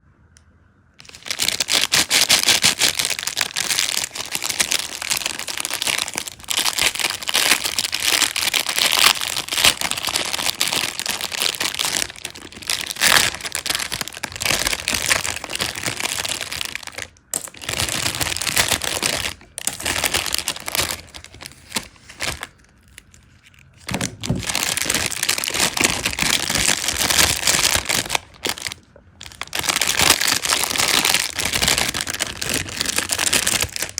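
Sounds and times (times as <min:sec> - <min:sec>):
plastic packaging crinkling: 0:01.0 - 0:33.9.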